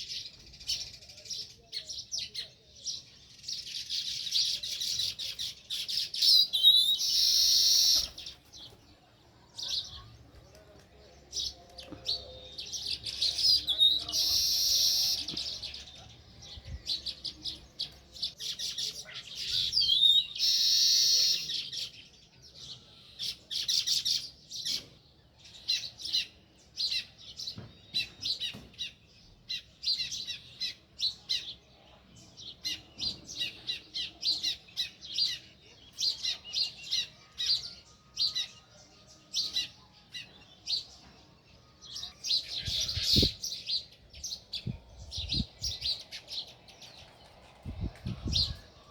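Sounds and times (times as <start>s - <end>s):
sparrows chirping: 0.0s - 48.9s.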